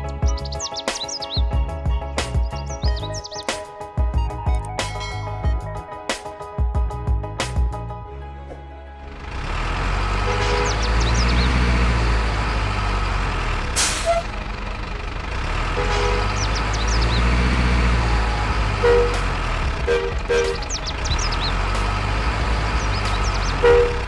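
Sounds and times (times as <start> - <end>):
truck engine rumbling: 0.0 - 3.4, 6.8 - 24.0
two-tone horn toots: 10.1 - 11.0, 13.8 - 14.4, 15.6 - 16.6, 18.7 - 20.7, 23.5 - 24.0.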